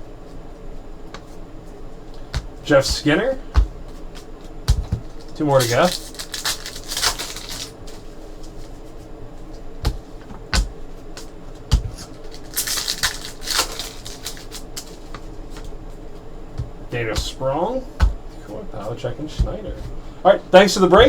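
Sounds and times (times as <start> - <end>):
cards knocking on table: 4.7 - 5.8
trading cards sliding: 5.0 - 8.8, 12.0 - 15.7.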